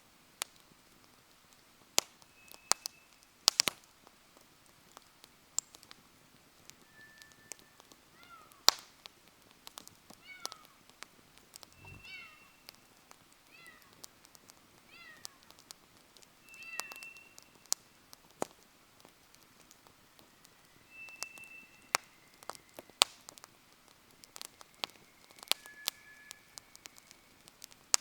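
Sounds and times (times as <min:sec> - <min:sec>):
wood fire crackling: 0:00.0 - 0:28.0
fire pops: 0:00.4 - 0:08.0, 0:08.6 - 0:28.0
brief whistled tones: 0:06.8 - 0:07.9, 0:11.7 - 0:12.8, 0:16.4 - 0:17.6, 0:20.7 - 0:22.8, 0:24.9 - 0:27.1.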